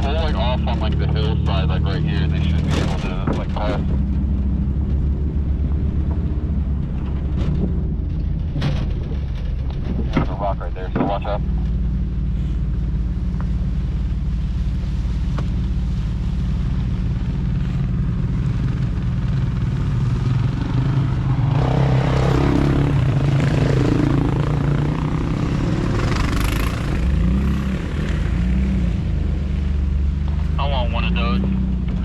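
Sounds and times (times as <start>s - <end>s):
vehicle engine running low: 0.0s - 32.0s
dirt bike passing by: 16.9s - 30.6s.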